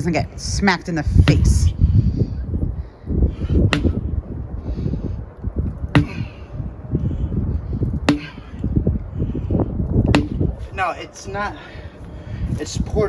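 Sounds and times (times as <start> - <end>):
wind buffeting microphone: 0.0 - 13.0
sledgehammer striking a tire: 3.7 - 4.0, 6.0 - 6.4, 8.1 - 8.6, 10.1 - 10.5.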